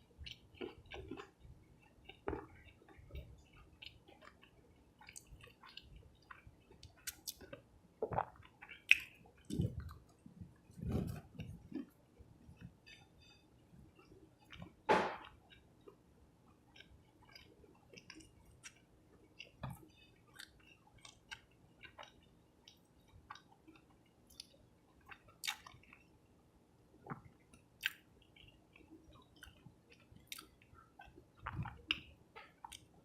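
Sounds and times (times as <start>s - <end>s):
person chewing food: 0.0s - 26.1s, 27.0s - 33.0s
wet mouth clicks and smacks: 5.0s - 10.0s, 25.4s - 25.8s, 27.8s - 28.5s, 29.2s - 32.9s.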